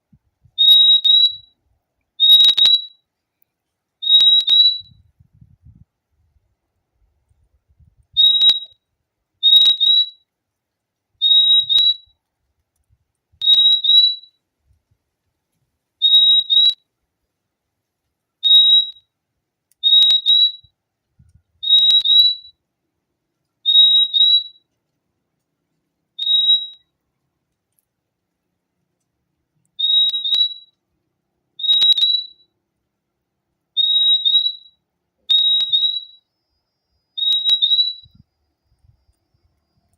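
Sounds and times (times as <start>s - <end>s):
bird calling two-note whistle: 0.6s - 1.6s, 2.2s - 3.0s, 4.0s - 5.0s, 8.2s - 8.8s, 9.4s - 10.2s, 11.2s - 12.2s, 13.4s - 14.4s, 16.0s - 16.8s, 18.4s - 19.1s, 21.6s - 22.5s, 26.2s - 26.9s, 29.8s - 30.8s, 31.6s - 32.5s, 33.8s - 36.4s, 37.1s - 38.3s.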